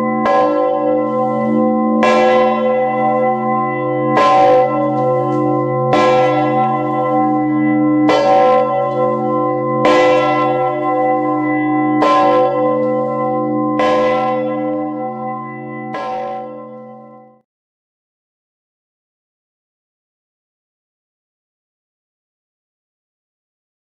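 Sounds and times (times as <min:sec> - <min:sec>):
deep bell strokes: 0:00.0 - 0:17.2.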